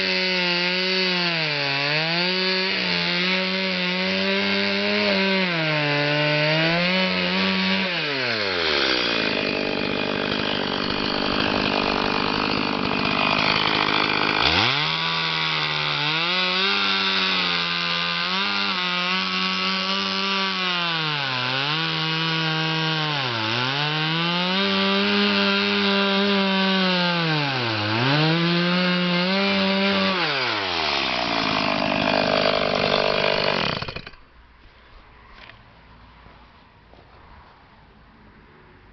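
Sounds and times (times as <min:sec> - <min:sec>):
chainsaw cutting wood: 0:00.0 - 0:34.4.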